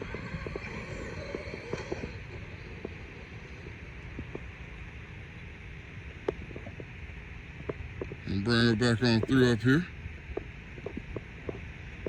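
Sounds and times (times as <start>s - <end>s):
rc truck low rumble: 0.0s - 4.4s.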